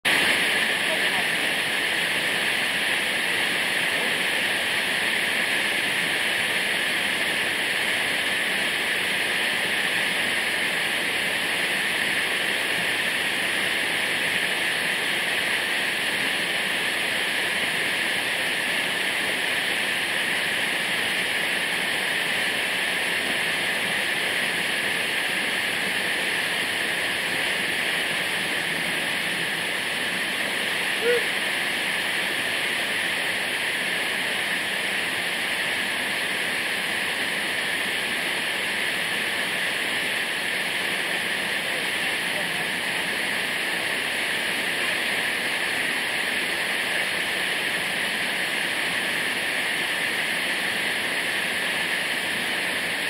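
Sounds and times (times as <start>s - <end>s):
waterfall rushing: 0.1s - 53.0s.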